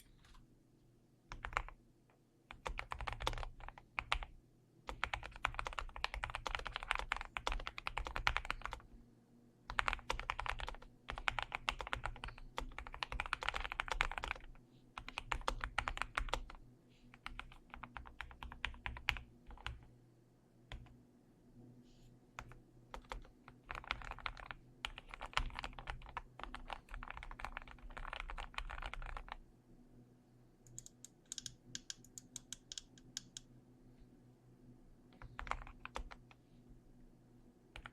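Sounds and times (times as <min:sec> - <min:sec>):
mechanical keyboard typing: 0:01.3 - 0:01.8, 0:02.5 - 0:04.3, 0:04.9 - 0:08.8, 0:09.7 - 0:16.6, 0:17.2 - 0:19.9, 0:22.4 - 0:29.4, 0:30.7 - 0:33.4, 0:35.2 - 0:36.3.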